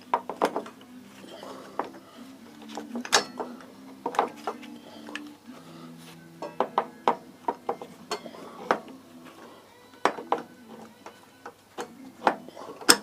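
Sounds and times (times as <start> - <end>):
faint steady hum: 0.0 - 13.0
metal tools clinking: 2.7 - 5.2, 7.7 - 8.9.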